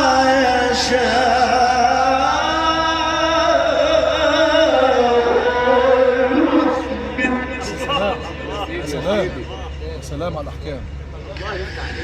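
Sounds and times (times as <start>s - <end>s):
person chanting melodically: 0.0s - 8.5s.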